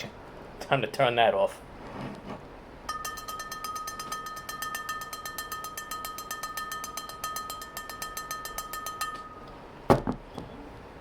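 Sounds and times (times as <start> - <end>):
steady high tone: 2.9 - 9.6.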